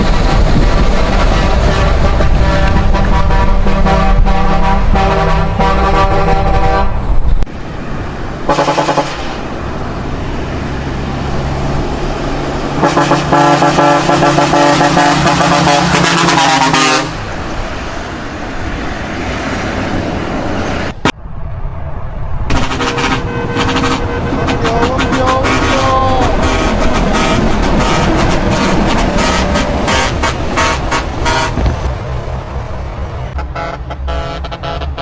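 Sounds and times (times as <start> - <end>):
truck engine and traffic rumble: 0.0 - 35.0
truck horn blasts: 0.8 - 7.3, 8.4 - 9.5, 12.7 - 19.6, 22.5 - 31.8, 33.3 - 35.0.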